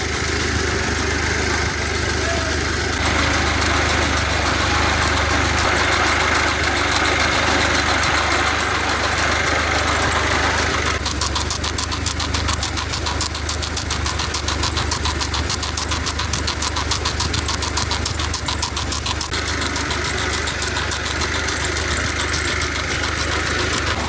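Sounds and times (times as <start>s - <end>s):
engine running: 0.0s - 24.0s
fast ticking clatter: 0.0s - 24.0s.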